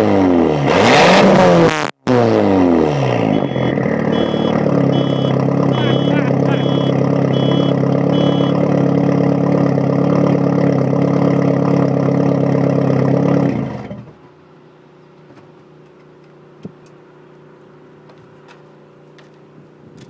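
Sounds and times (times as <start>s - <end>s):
turbocharged car engine running: 0.6s - 15.0s
engine running down: 1.3s - 20.0s.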